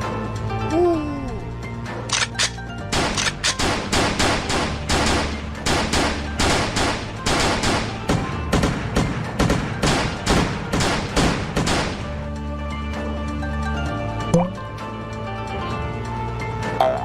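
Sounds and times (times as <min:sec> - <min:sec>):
background music: 0:00.0 - 0:17.0
rapid gunfire: 0:02.9 - 0:12.2.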